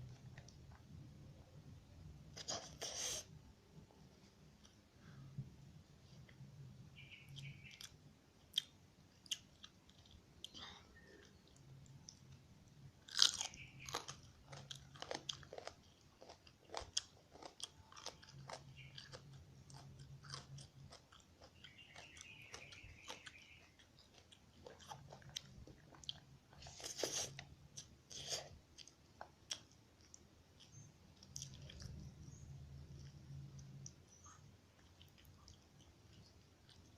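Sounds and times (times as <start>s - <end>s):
person chewing food: 7.2s - 36.9s
crunchy bites: 13.0s - 23.6s.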